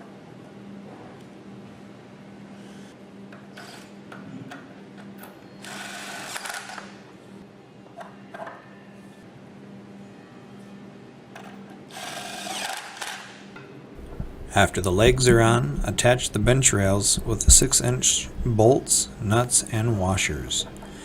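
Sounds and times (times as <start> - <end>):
steady low hum: 14.0 - 21.0.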